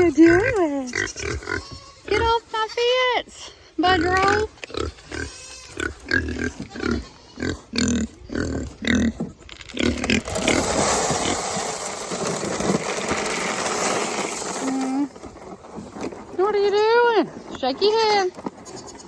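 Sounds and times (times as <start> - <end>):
pig grunting: 3.8 - 11.4.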